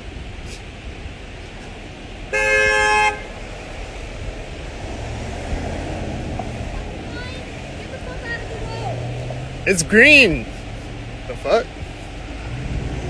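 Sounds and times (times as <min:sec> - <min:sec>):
low traffic rumble: 0:00.0 - 0:13.0
truck horn honk: 0:02.3 - 0:03.8.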